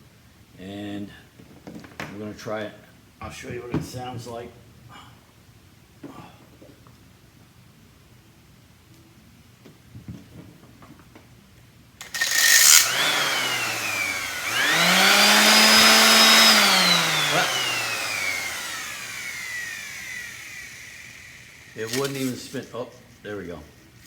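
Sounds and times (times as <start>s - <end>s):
sander motor whine: 12.0s - 22.3s.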